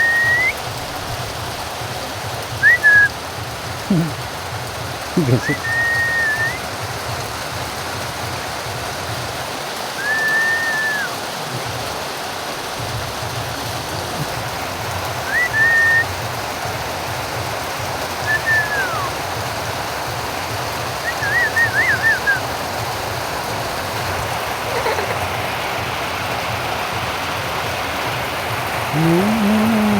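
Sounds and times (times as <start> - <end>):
bird whistling calls: 0.0 - 0.6, 2.6 - 3.1, 5.2 - 6.6, 10.0 - 11.2, 15.2 - 16.2, 18.2 - 19.2, 21.0 - 22.5
rain hiss: 0.0 - 29.9.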